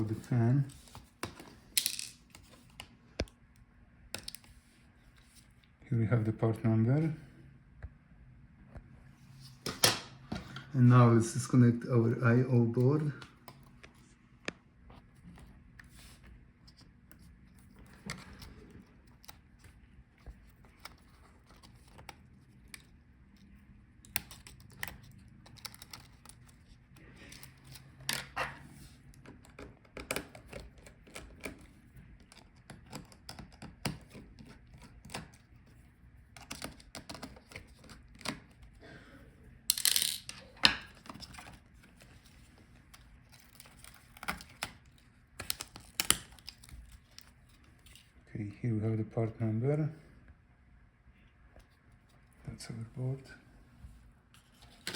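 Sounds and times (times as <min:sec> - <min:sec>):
tools clicking on laptop plastic: 0:20.7 - 0:28.2, 0:29.2 - 0:35.5, 0:36.3 - 0:38.7.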